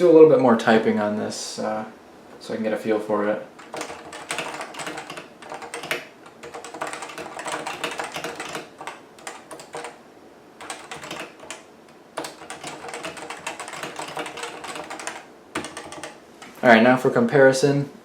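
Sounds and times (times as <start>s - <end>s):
keyboard typing: 3.6s - 10.0s, 10.6s - 16.6s.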